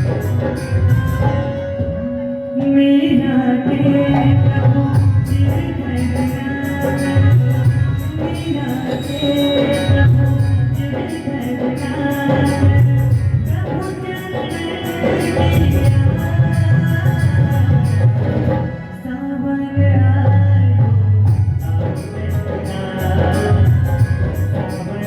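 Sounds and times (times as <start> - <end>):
hand drum beat: 0.0 - 1.5
jingling percussion: 0.0 - 1.7, 4.8 - 18.7, 21.3 - 25.0.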